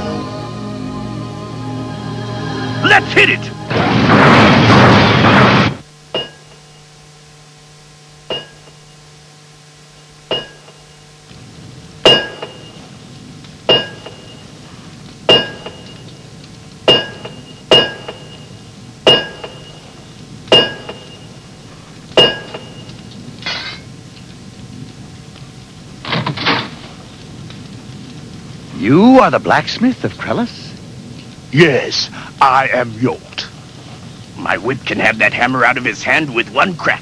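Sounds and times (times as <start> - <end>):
hammer striking metal anvil: 6.2 - 6.6, 8.3 - 8.8, 10.3 - 10.8, 12.1 - 12.8, 13.7 - 14.4, 15.3 - 15.9, 16.9 - 18.4, 19.1 - 19.8, 20.5 - 21.2, 22.2 - 22.8.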